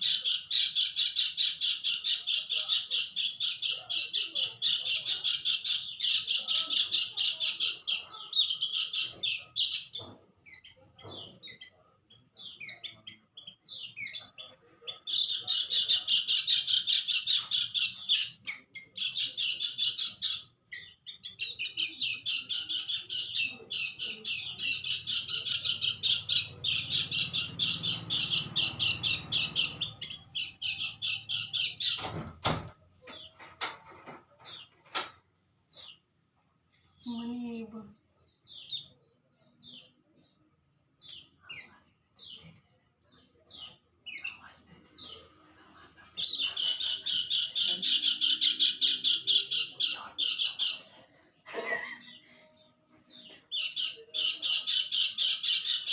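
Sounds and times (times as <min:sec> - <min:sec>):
bird chirping: 0:00.0 - 0:55.9.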